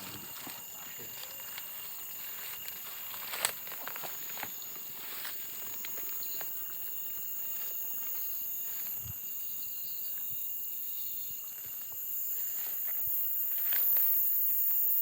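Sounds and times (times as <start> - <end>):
insects chirring: 0.0 - 15.0.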